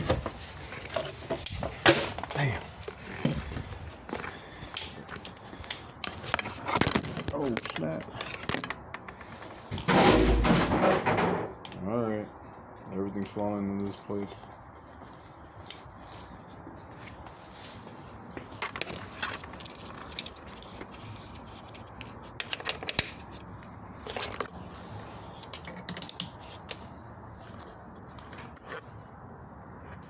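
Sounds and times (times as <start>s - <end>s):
sharp knocks: 9.8s - 11.6s.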